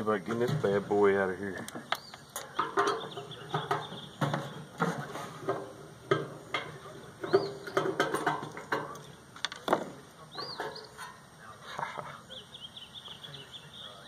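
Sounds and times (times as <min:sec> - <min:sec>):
metallic clatter and knocks: 0:00.3 - 0:11.2
bird call: 0:01.9 - 0:04.8, 0:07.2 - 0:07.9, 0:10.2 - 0:11.1, 0:11.7 - 0:14.0.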